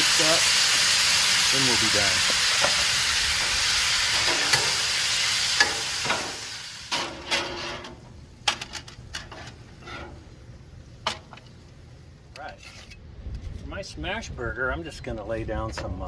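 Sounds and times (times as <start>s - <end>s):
food sizzling on a griddle: 0.0s - 8.0s.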